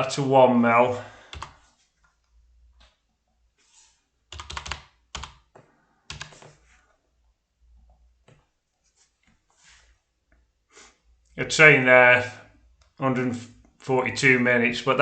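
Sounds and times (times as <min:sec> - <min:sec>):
keyboard keys tapping: 0:01.3 - 0:02.2, 0:04.3 - 0:06.6.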